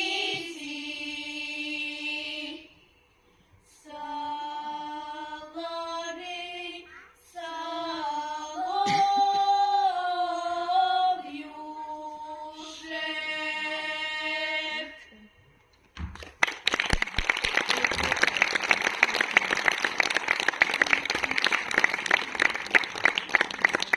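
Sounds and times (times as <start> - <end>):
woman singing unaccompanied: 3.8 - 15.1.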